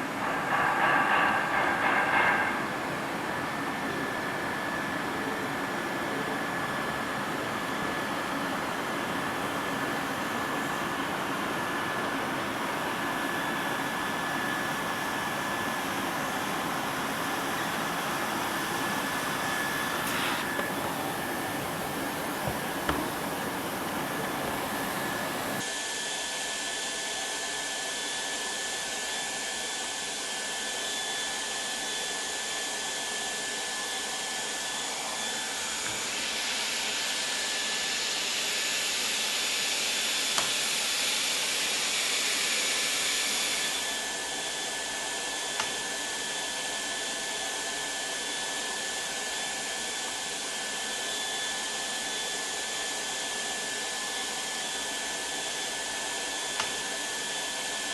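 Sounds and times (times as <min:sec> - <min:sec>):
hot-air welder blower hiss: 0:09.2 - 0:25.7.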